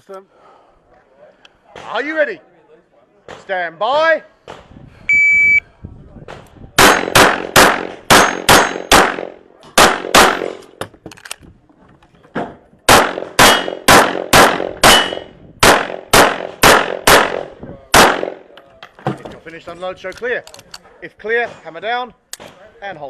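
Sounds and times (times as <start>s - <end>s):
shot timer beep: 5.1s - 5.6s
handgun shots: 6.3s - 10.6s, 12.9s - 18.4s.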